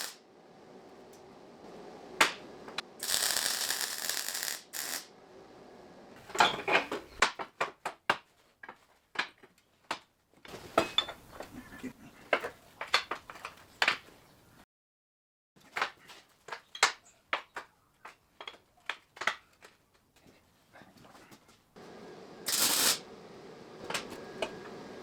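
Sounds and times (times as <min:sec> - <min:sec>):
hissing bursts: 0:00.0 - 0:00.2, 0:02.8 - 0:05.2, 0:21.9 - 0:23.9.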